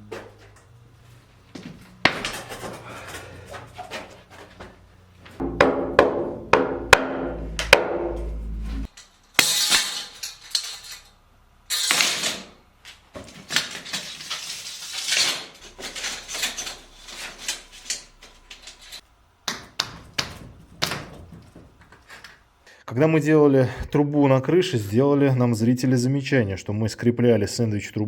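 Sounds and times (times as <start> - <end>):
metal parts clinking: 9.0 - 12.5, 13.8 - 19.0
rustling: 13.3 - 19.1.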